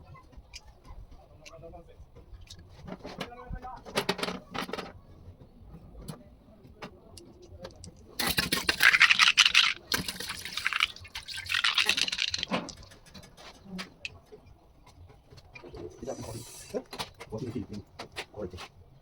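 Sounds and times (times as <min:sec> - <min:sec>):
wet scrubbing of parts: 0:08.2 - 0:13.2.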